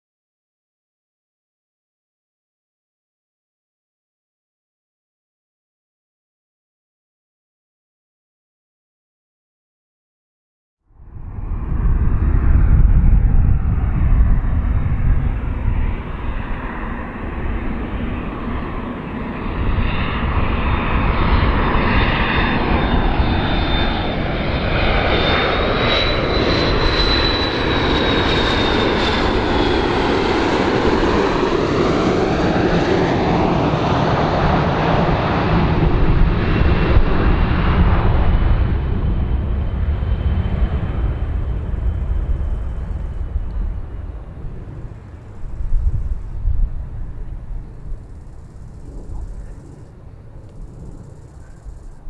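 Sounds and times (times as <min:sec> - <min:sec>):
aircraft engines flying past: 0:10.9 - 0:52.0
high whine: 0:11.0 - 0:19.4, 0:38.8 - 0:52.0.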